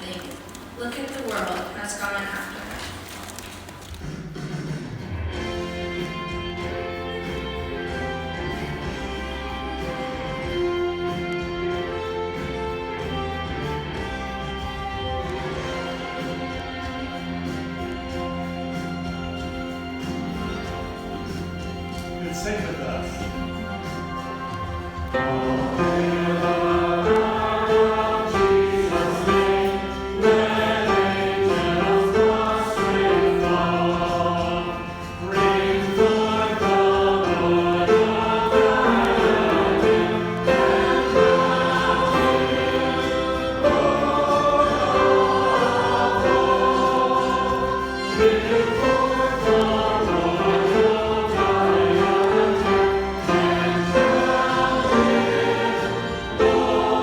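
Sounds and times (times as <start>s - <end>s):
choir and congregation singing hymn: 5.4s - 57.0s.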